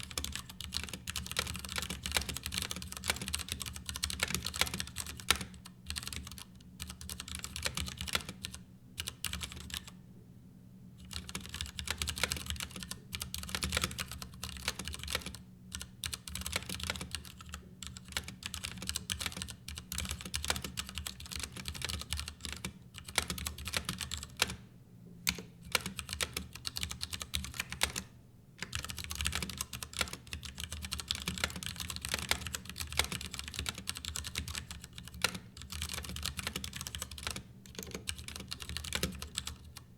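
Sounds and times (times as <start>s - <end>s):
mechanical keyboard typing: 0.0s - 9.9s, 11.0s - 24.6s, 25.3s - 39.8s.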